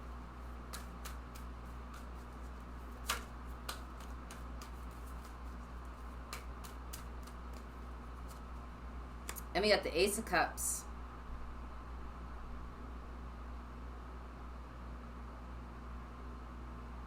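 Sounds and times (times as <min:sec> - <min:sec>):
steady low hum: 0:00.0 - 0:17.0
cards tapping on a table: 0:03.0 - 0:05.4.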